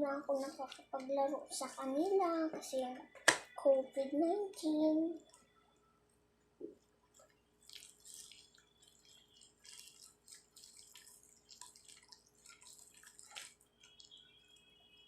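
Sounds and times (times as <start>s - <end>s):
slime squelching and crackling: 0.0s - 2.9s, 6.7s - 15.0s.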